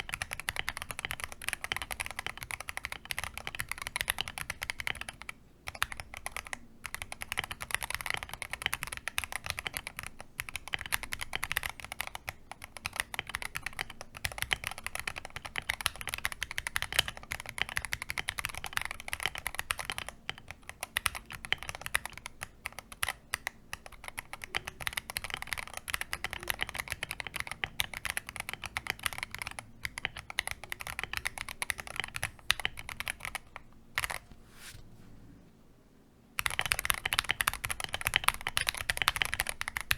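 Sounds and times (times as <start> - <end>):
mechanical keyboard typing: 0.0 - 34.2, 36.4 - 39.9.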